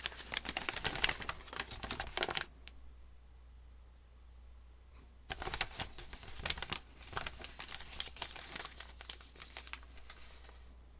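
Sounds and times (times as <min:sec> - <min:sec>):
paper crinkling and crackling: 0:00.0 - 0:02.5, 0:05.3 - 0:10.7.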